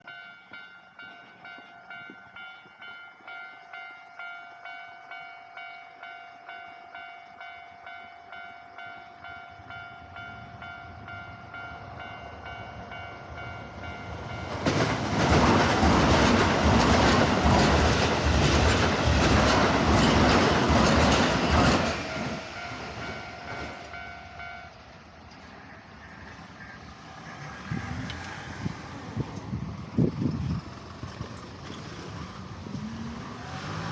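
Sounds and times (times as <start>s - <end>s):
train wheels rumbling and clattering: 10.9s - 33.9s.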